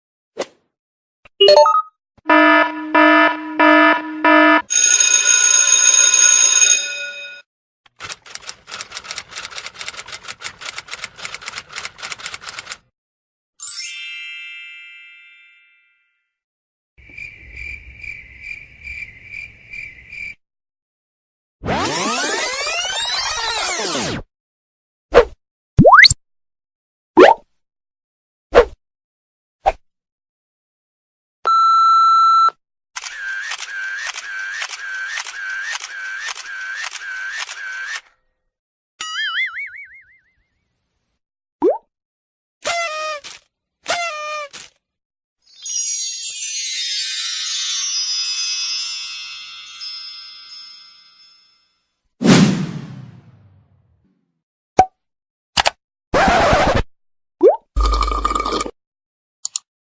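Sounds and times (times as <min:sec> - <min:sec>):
electronic beep: 0:01.4 - 0:04.7
typewriter bell ding: 0:04.7 - 0:07.4
pop dropping in pitch: 0:25.8 - 0:26.2, 0:27.2 - 0:27.4, 0:41.6 - 0:41.8.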